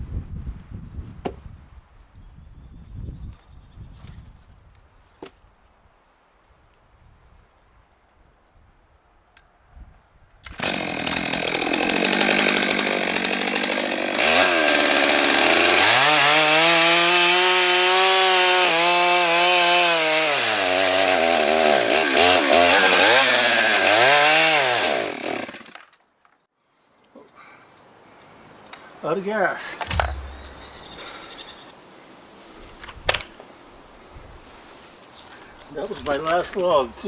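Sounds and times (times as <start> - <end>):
chainsaw cutting through log: 10.5 - 25.9.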